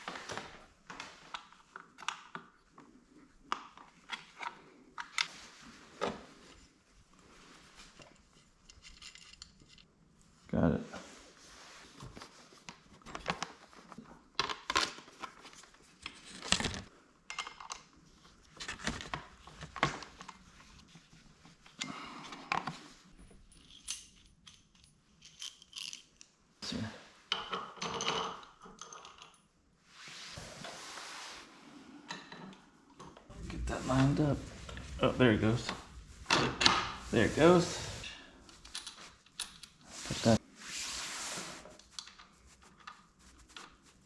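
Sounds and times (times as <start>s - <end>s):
metal tools and bike parts clinking: 8.1s - 9.9s, 23.4s - 26.2s, 27.4s - 29.5s.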